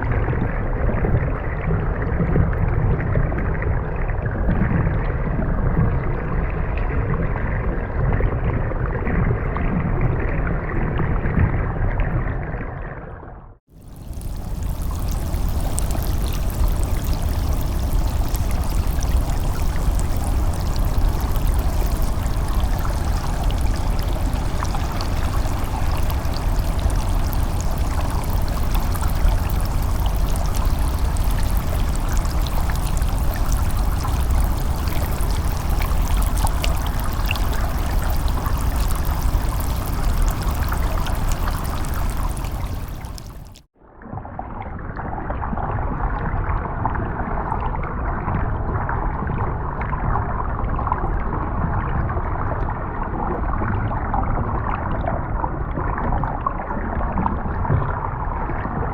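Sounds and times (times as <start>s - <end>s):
rushing water with crackle: 13.7s - 58.9s.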